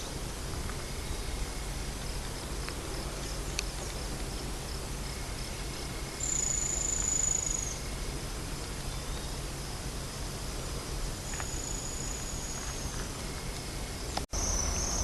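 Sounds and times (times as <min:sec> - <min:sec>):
insect chorus pulsing: 0:00.0 - 0:15.0
insect high trill: 0:00.0 - 0:15.0.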